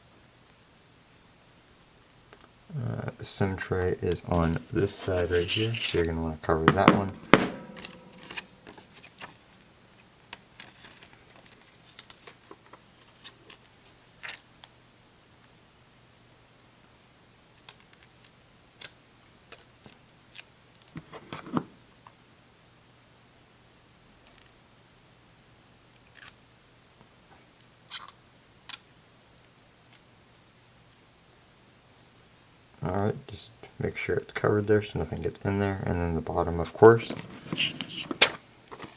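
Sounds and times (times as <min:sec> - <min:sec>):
brief scrape: 0:04.3 - 0:06.1, 0:37.1 - 0:38.4
phone handling clicks and taps: 0:06.7 - 0:08.8.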